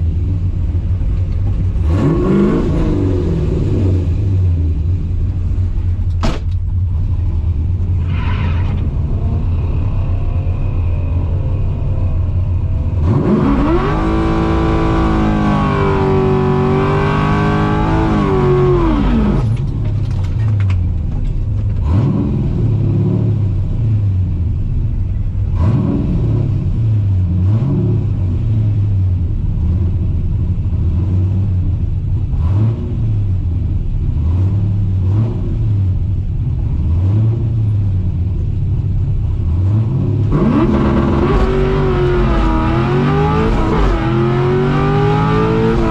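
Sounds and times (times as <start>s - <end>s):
car engine revving: 0.0s - 45.9s
engine throttle blips: 35.0s - 45.9s.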